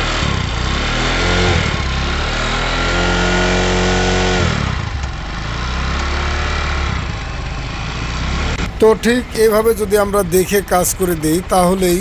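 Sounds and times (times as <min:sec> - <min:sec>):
motorcycle engine revving: 0:00.0 - 0:09.0.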